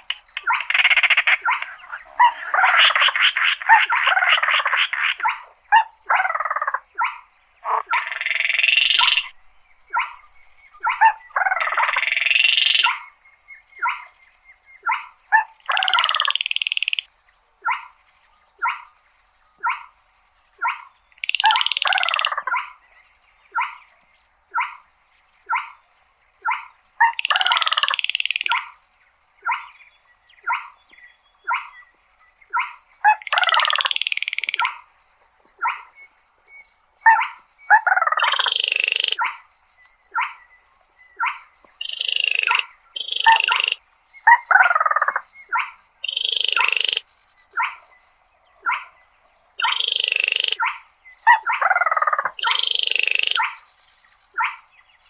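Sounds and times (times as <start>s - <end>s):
bird rattling trills: 14.9s - 17.1s, 20.6s - 22.8s, 26.5s - 28.8s, 32.6s - 34.8s, 37.9s - 39.4s, 41.3s - 43.8s, 46.0s - 47.8s, 49.6s - 50.8s, 51.8s - 53.6s.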